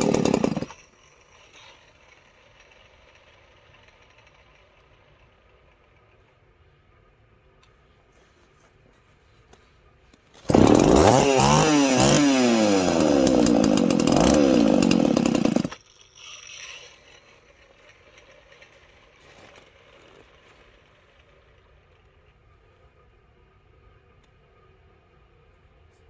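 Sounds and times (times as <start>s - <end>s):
chainsaw revving: 0.0s - 4.6s, 10.4s - 19.4s.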